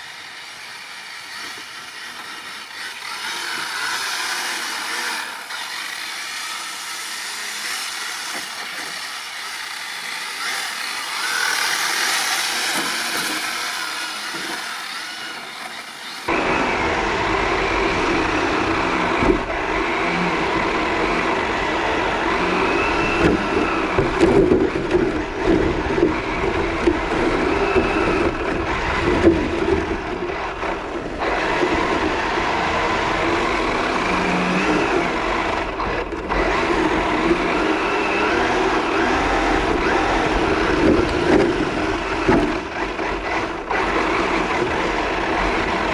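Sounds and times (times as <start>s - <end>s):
electric motor whine: 0.0s - 45.9s
rumbling of car on ice: 16.3s - 45.9s.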